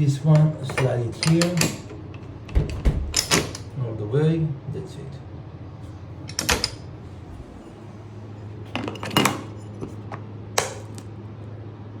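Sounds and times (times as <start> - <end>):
steady low hum: 0.0 - 12.0
metal lock bar clicking: 0.8 - 3.7, 6.3 - 6.8.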